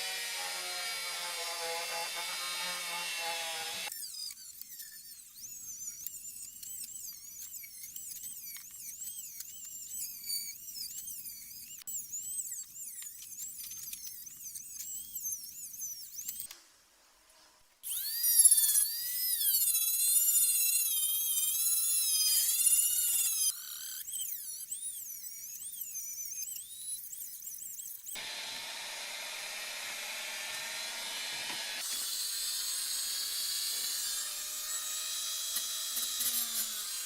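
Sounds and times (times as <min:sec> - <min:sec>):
high-speed rotary tool whining: 0:00.0 - 0:05.0, 0:17.9 - 0:24.2, 0:28.2 - 0:37.0.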